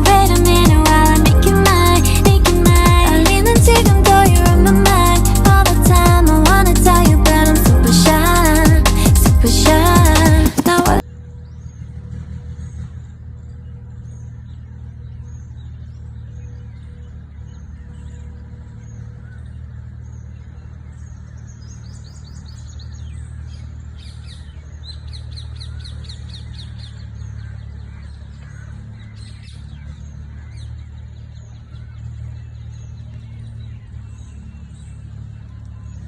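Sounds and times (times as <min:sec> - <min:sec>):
steady low rumble: 0:00.0 - 0:11.0
bird chirping: 0:12.7 - 0:36.0.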